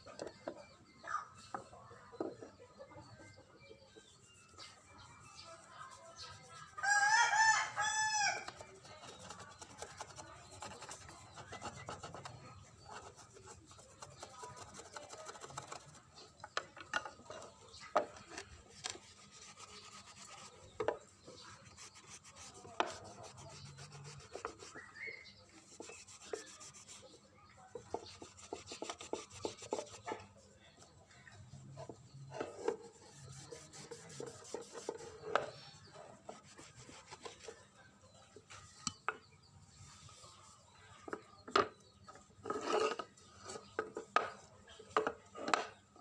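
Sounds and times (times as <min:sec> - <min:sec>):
rubbing and scraping strokes: 0:04.2 - 0:07.1, 0:08.4 - 0:30.8, 0:31.5 - 0:37.8.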